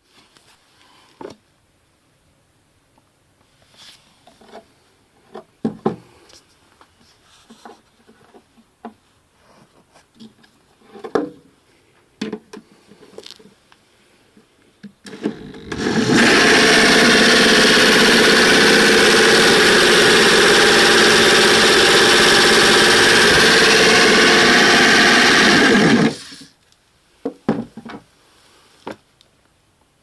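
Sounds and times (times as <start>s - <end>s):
washing machine motor whirring: 15.1s - 26.5s.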